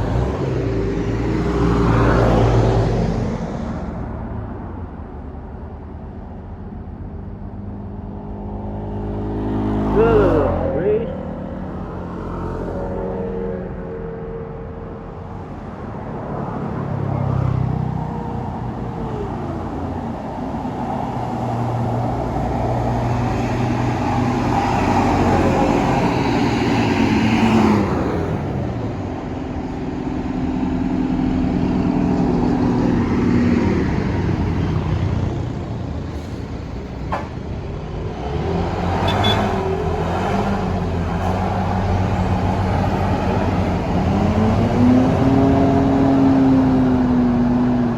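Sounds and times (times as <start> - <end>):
buses and traffic passing: 0.0 - 47.9.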